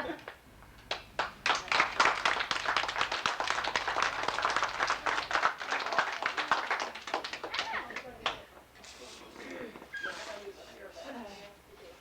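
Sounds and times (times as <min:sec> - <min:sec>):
people clapping: 0:00.1 - 0:08.5.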